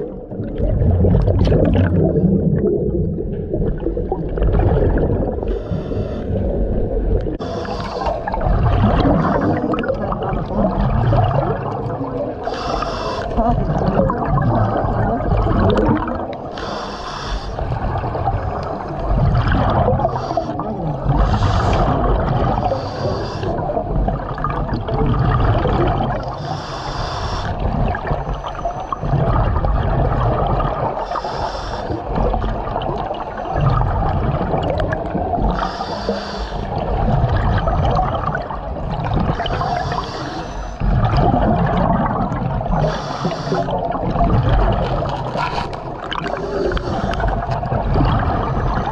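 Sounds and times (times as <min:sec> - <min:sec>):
exhaled air bubbles gurgling: 0:00.0 - 0:48.9
diving regulator hissing: 0:35.5 - 0:36.7, 0:39.4 - 0:40.8, 0:42.8 - 0:43.8.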